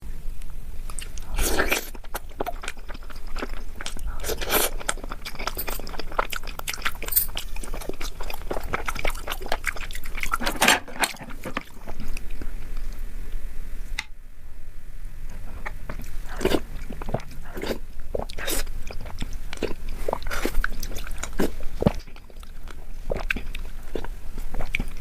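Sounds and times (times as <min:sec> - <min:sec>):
chewing with wet mouth clicks: 0:00.9 - 0:13.0, 0:15.3 - 0:25.0.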